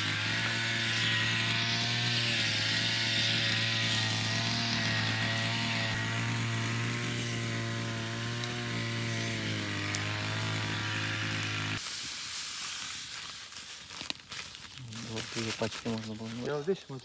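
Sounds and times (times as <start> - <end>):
small motor running: 0.0 - 11.9.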